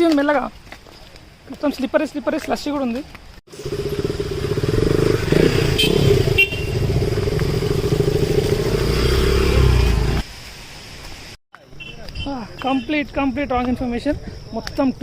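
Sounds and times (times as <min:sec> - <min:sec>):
vehicle engine running: 0:03.5 - 0:10.2.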